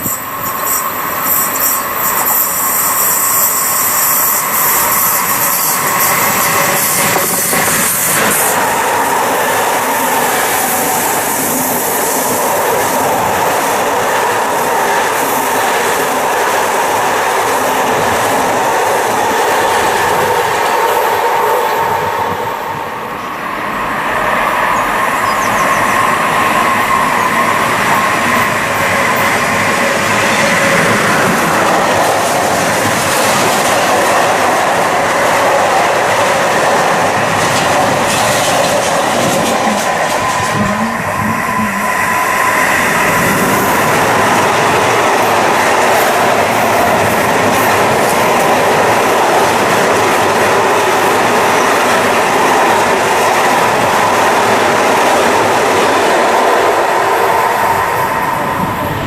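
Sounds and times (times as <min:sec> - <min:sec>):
freight train wheels clattering: 0:24.8 - 0:59.0.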